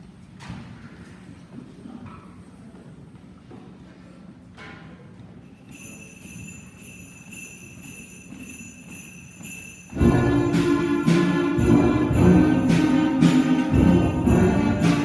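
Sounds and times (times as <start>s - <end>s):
sleigh bells jingling: 5.7s - 15.0s
band playing: 10.0s - 15.0s.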